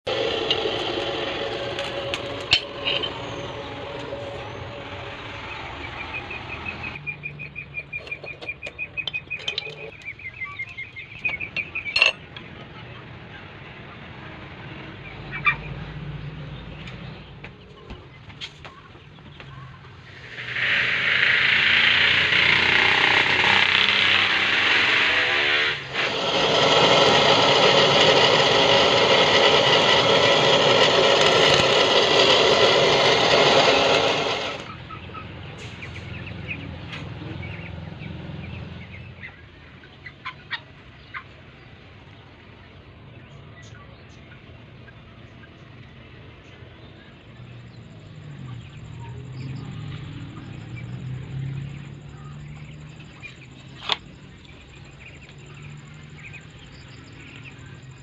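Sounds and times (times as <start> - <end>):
power grinder on steel: 0.0 - 5.8, 20.1 - 34.7
machine whine: 0.0 - 7.0, 20.2 - 34.8.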